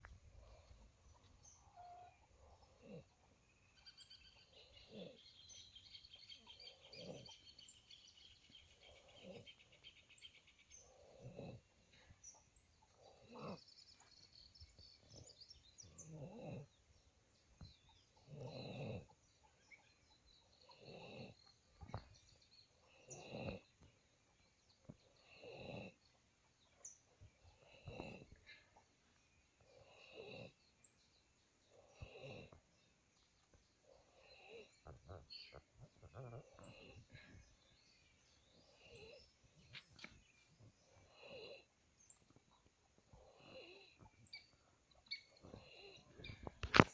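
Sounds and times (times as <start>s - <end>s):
calf snoring: 1.4s - 3.3s, 4.0s - 9.8s, 10.7s - 12.2s, 12.9s - 14.0s, 15.8s - 16.8s, 17.6s - 19.8s, 20.5s - 22.0s, 22.8s - 23.9s, 24.9s - 26.1s, 27.4s - 28.6s, 29.6s - 30.8s, 31.6s - 32.9s, 33.8s - 42.1s, 43.1s - 44.6s, 45.2s - 46.9s.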